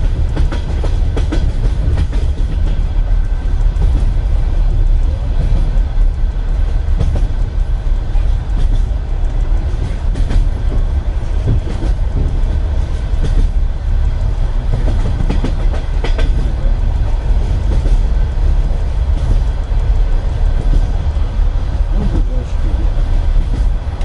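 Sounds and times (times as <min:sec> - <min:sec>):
train carriage rumble: 0:00.0 - 0:24.0
wheels clacking over rail joints: 0:00.0 - 0:24.0.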